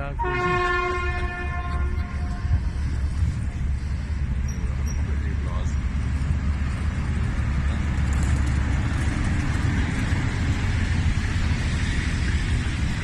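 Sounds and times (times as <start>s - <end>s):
train rumbling and hissing: 0.0s - 13.0s.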